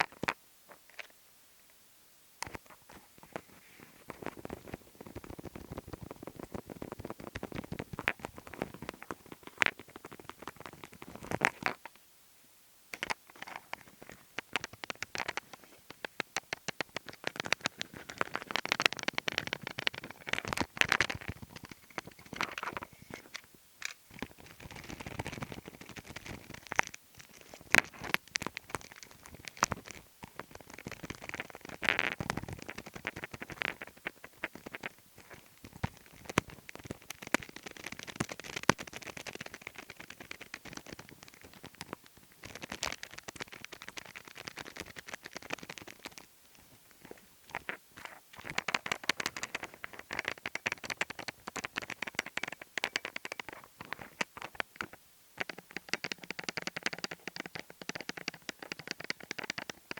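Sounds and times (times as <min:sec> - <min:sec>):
fingertip tapping: 0:13.0 - 0:22.9, 0:24.2 - 0:46.3, 0:47.0 - 0:59.9
scratchy rubbing: 0:13.3 - 0:54.6.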